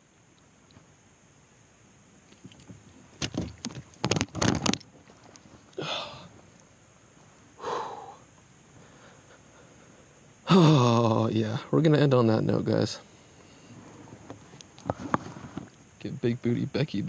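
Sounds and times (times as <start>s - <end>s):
fish knocking and slapping: 2.4s - 5.0s.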